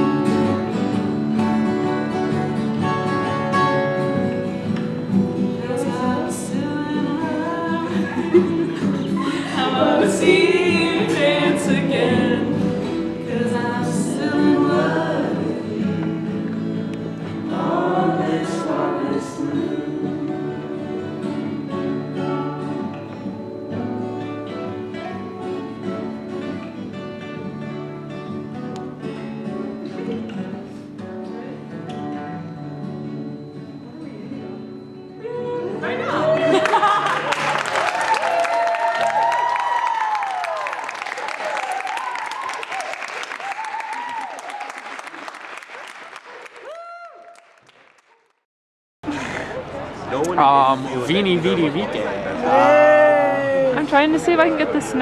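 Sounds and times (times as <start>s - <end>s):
acoustic guitar playing: 0.0s - 40.9s, 49.1s - 55.0s
person singing: 5.5s - 23.2s.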